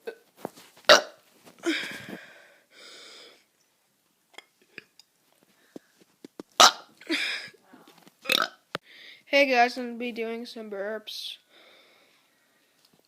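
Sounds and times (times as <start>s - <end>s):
child burping: 0.9s - 1.9s, 6.6s - 8.7s
faint breathy sound: 11.5s - 12.8s.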